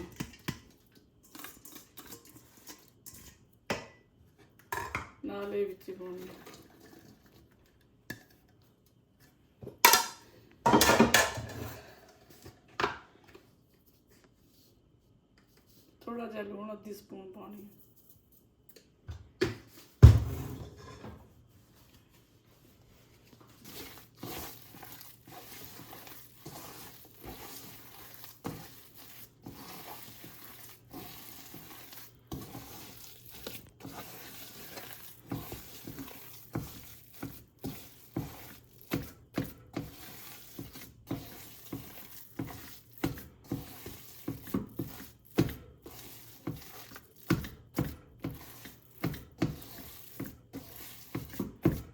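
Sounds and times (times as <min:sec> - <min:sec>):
spoon scraping a pot: 0:01.2 - 0:03.5, 0:23.5 - 0:51.9.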